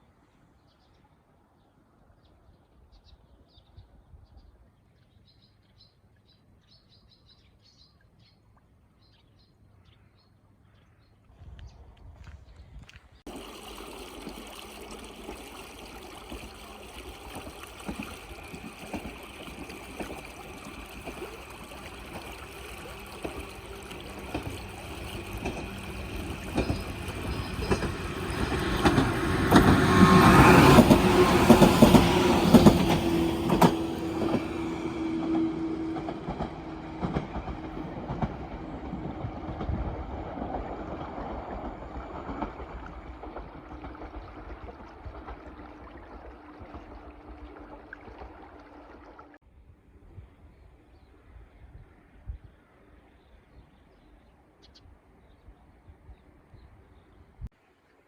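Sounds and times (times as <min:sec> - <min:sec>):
wheels clicking over rail joints: 0:13.3 - 0:45.6
electric train passing: 0:13.3 - 0:48.9.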